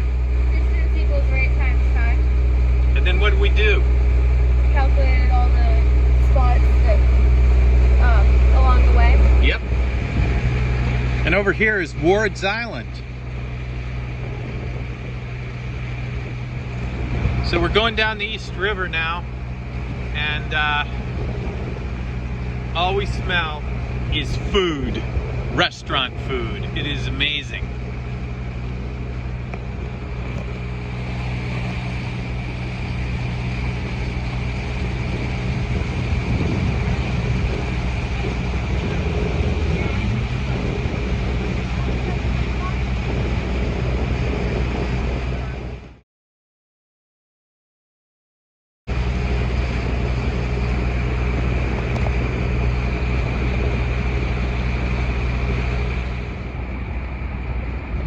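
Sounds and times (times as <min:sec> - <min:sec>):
water wash: 0:00.0 - 0:45.7
boat engine droning: 0:00.0 - 0:46.0, 0:48.9 - 0:58.0
wind noise: 0:00.0 - 0:46.0, 0:48.9 - 0:58.0.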